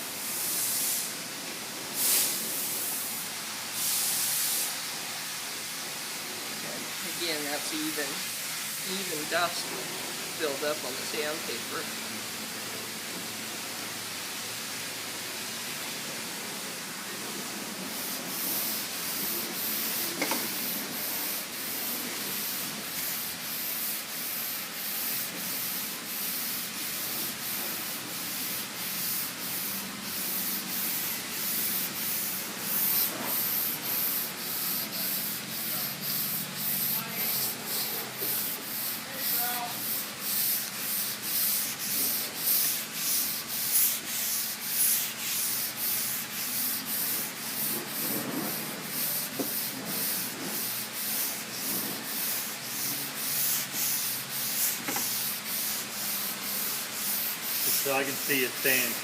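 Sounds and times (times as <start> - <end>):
steady hiss: 0.0 - 59.0
sanding board rasping on panel: 17.9 - 59.0.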